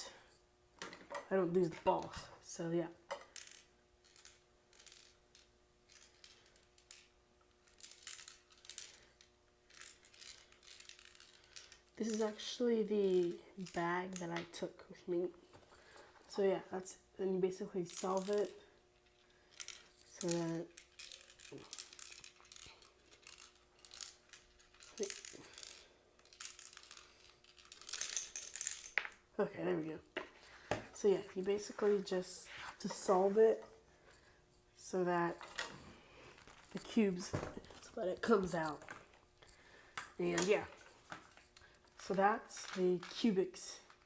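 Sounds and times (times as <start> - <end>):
small plastic pieces rattling: 3.3 - 12.6, 17.9 - 29.2, 35.3 - 44.0.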